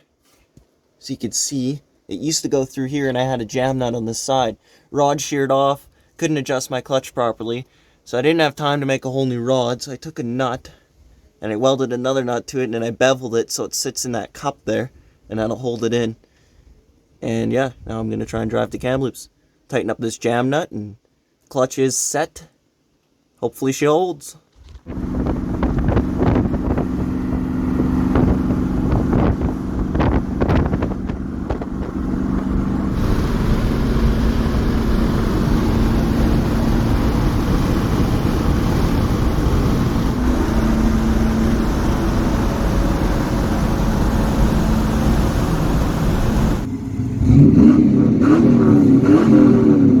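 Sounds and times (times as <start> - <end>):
truck engine running: 24.9 - 47.5
engine revving: 24.9 - 50.0.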